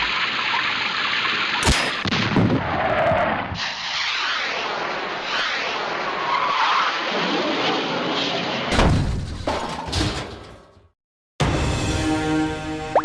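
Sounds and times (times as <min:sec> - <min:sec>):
water rushing and splashing: 0:00.0 - 0:02.2.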